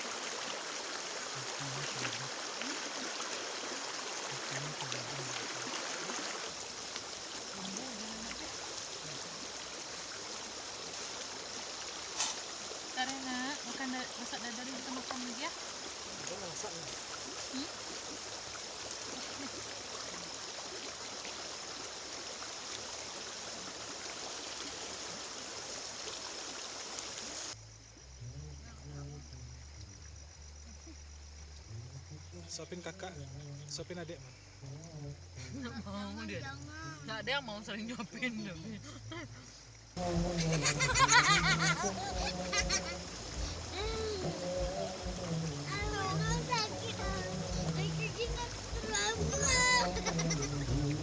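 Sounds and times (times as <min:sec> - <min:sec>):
rushing water hiss: 0:00.0 - 0:28.6, 0:29.2 - 0:51.0.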